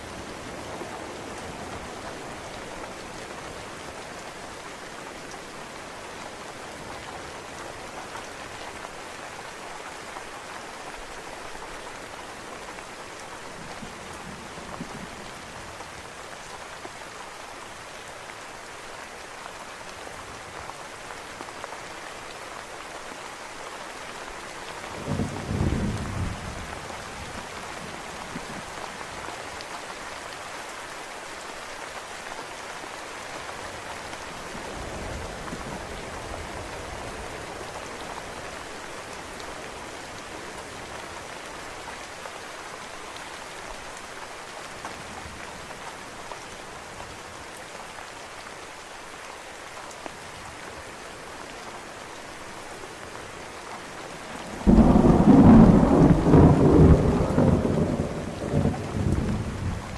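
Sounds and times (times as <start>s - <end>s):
steady rain: 0.0s - 59.9s
thunder rumble: 54.6s - 59.9s.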